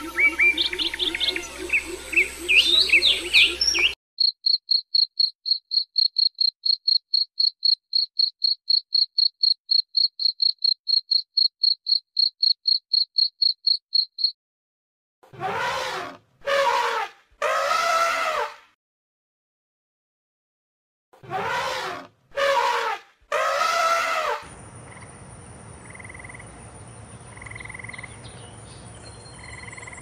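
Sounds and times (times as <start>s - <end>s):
songbird chirping: 0.0s - 4.0s, 24.5s - 30.0s
cricket chirping: 4.2s - 14.4s, 24.5s - 30.0s.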